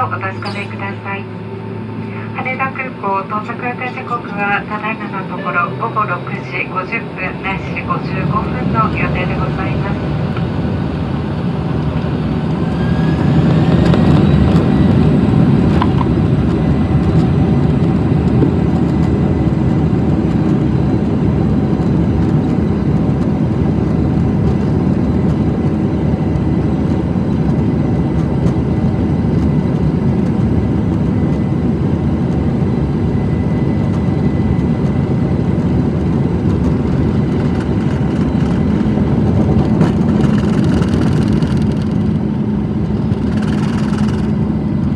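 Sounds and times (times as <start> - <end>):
jet engines whining and rumbling: 0.0 - 44.9
runway roll rumble: 3.6 - 44.9.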